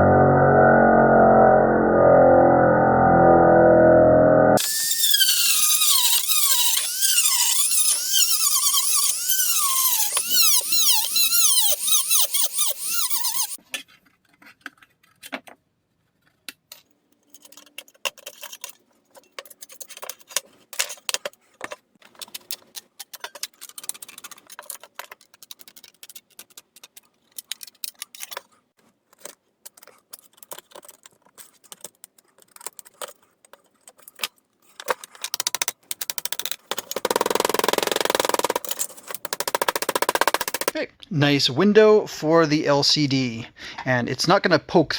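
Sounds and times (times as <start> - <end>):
power tool cutting sheet metal: 4.6 - 13.6, 36.9 - 40.8.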